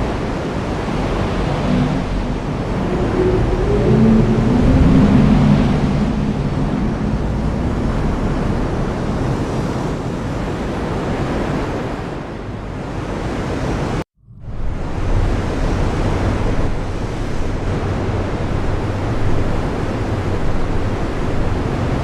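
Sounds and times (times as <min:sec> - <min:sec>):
deep rumble: 0:00.0 - 0:10.0, 0:14.2 - 0:22.0.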